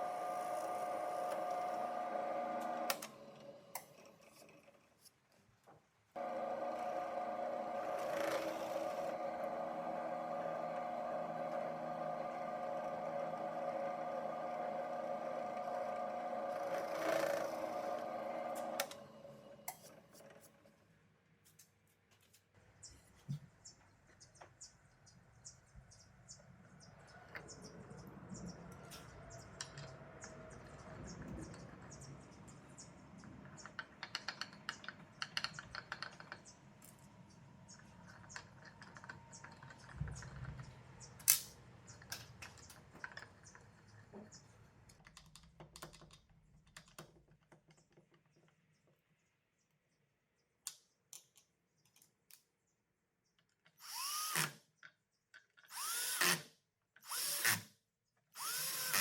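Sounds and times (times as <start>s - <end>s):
power drill spinning up: 0.0s - 4.0s, 6.2s - 20.2s, 53.8s - 54.6s, 55.7s - 57.6s, 58.4s - 59.0s.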